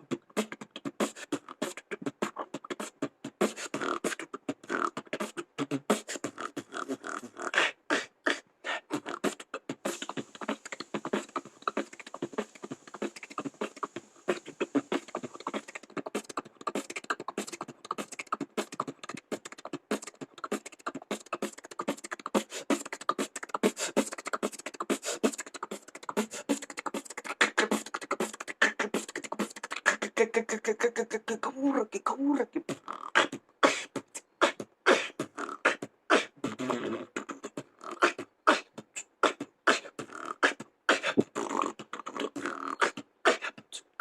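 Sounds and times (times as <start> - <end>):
beatboxing: 0.0 - 44.0
steady high hiss: 8.7 - 18.8.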